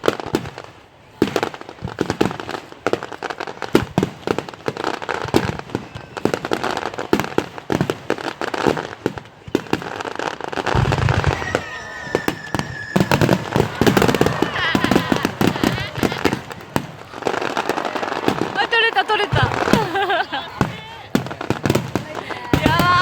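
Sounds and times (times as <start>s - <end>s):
fireworks cracking and banging: 0.0s - 23.0s
deep firework boom: 10.7s - 18.7s, 19.3s - 22.9s.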